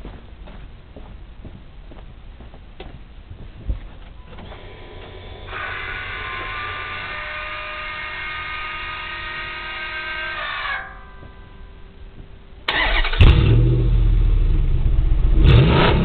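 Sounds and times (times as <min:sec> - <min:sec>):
small electric motor whining: 0:04.5 - 0:10.4.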